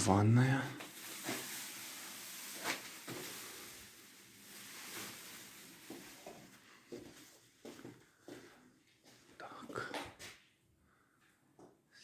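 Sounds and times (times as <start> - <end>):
steady hiss: 0.0 - 7.8
rustling: 0.1 - 8.0
faint footsteps: 4.4 - 10.5.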